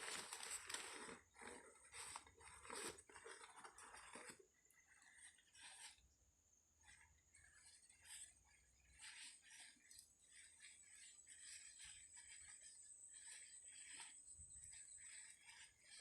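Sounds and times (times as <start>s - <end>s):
packaging rustling and crinkling: 0.0s - 4.4s.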